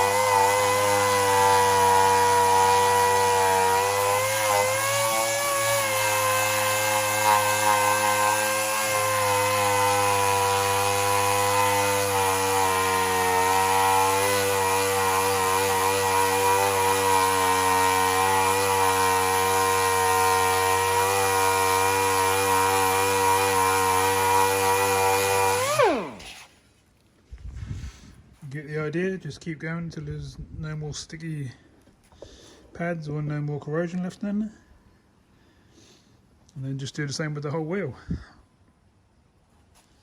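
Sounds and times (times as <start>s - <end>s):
power tool grinding metal: 0.0s - 26.5s.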